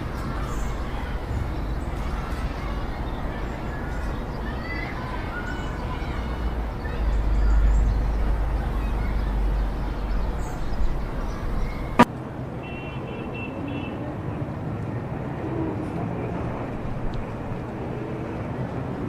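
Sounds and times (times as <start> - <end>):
street traffic: 0.0 - 19.0.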